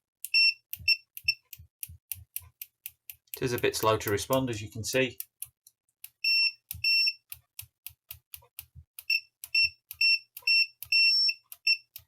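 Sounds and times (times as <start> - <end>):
test leads clicking: 0.2 - 12.0
multimeter continuity beeps: 0.3 - 1.6, 6.1 - 7.4, 9.0 - 12.0.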